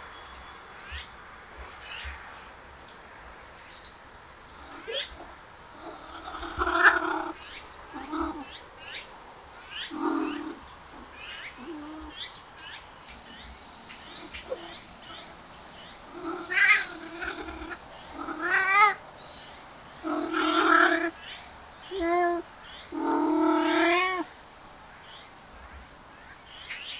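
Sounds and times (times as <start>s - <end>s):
cats meowing and yowling: 4.7s - 8.5s, 13.3s - 19.0s, 20.0s - 21.2s, 21.8s - 24.3s.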